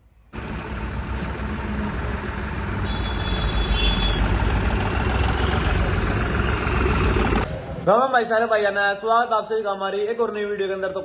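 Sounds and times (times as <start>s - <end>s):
diesel tractor engine running: 0.4s - 7.5s.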